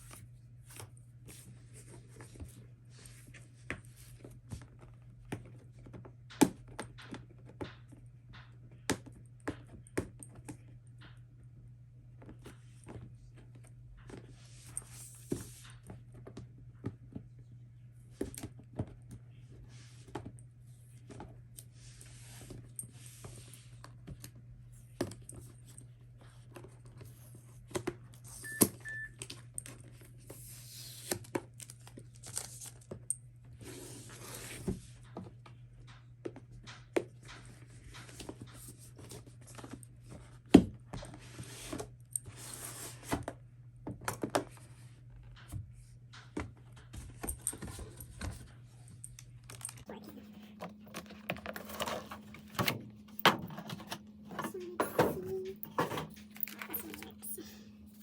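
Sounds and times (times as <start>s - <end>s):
short high beeps: 28.4s - 29.1s
steady low hum: 45.7s - 58.0s.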